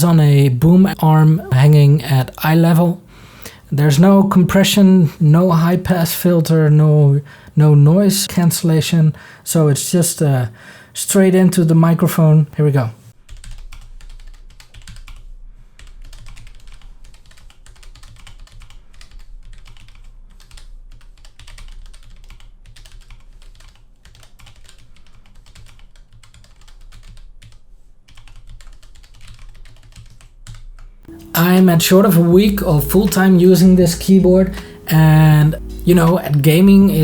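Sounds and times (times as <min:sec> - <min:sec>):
mechanical keyboard typing: 0:13.3 - 0:15.2, 0:15.8 - 0:31.8.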